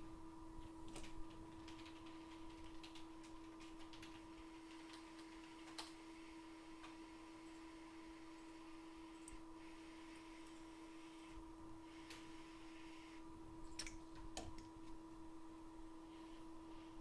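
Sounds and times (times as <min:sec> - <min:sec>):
steady electrical hum: 0:00.0 - 0:17.0.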